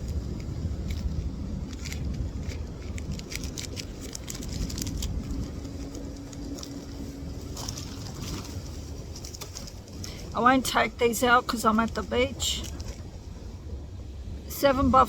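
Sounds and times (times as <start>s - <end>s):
low outdoor rumble: 0.0s - 15.0s
plastic bags crinkling: 1.6s - 10.2s.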